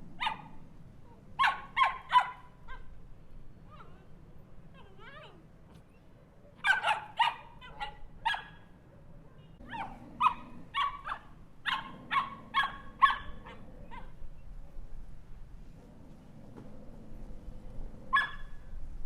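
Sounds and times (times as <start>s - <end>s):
small dog barking: 0.2s - 0.6s, 1.4s - 3.0s, 6.6s - 8.7s, 9.6s - 14.2s, 18.1s - 18.6s.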